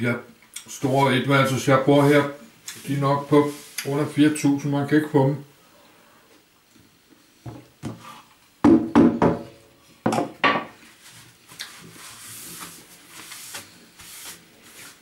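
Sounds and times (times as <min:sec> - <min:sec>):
soft rustling: 0:10.8 - 0:15.0.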